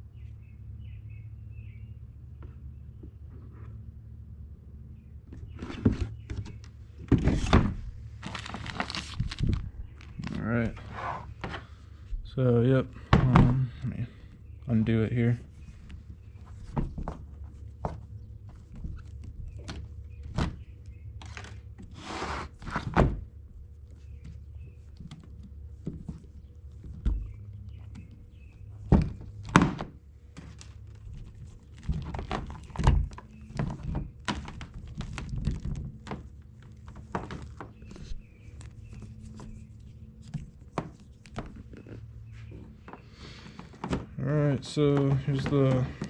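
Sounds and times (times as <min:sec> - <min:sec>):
handling thumps and clicks: 0:23.9 - 0:46.0.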